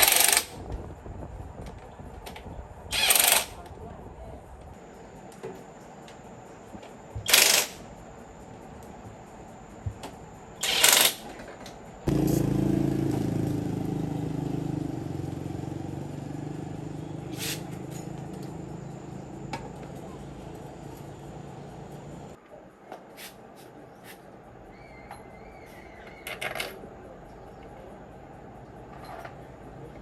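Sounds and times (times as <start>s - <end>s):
short loud hiss: 17.3s - 17.7s.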